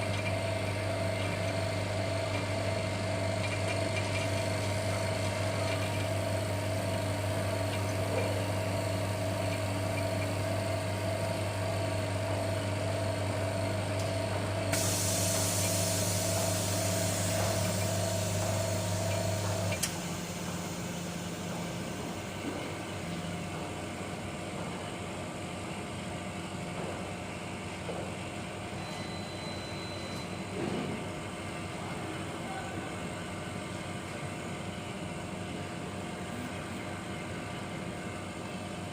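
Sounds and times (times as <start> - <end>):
machine electric hum: 0.0 - 38.9
air hissing: 14.7 - 21.2.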